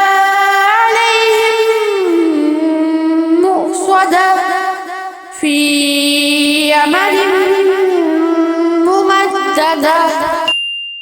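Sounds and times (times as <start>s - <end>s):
person chanting melodically: 0.0s - 10.5s
bell-like ding: 10.5s - 11.0s.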